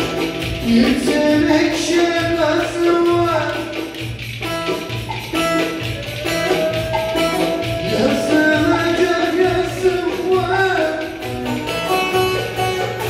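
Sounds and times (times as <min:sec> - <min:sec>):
low drum beat: 0:00.0 - 0:11.9
folk dance music: 0:00.0 - 0:13.0
plucked strings: 0:00.0 - 0:13.0
pitch-bending melody: 0:04.4 - 0:13.0.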